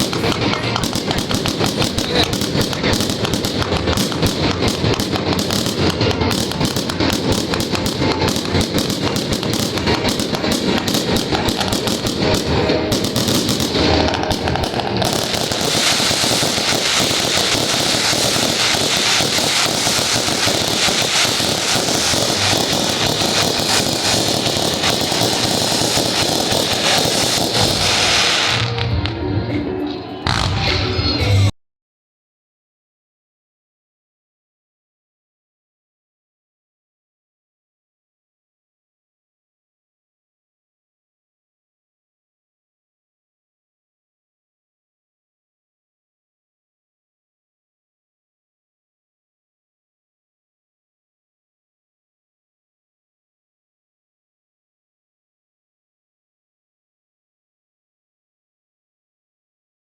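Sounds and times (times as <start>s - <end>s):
fireworks crackling and banging: 0.0s - 29.2s, 30.3s - 31.5s.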